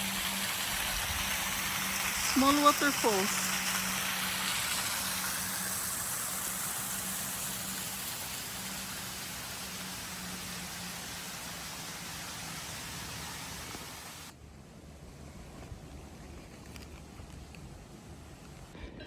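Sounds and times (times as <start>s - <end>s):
waterfall rushing: 0.0s - 14.3s.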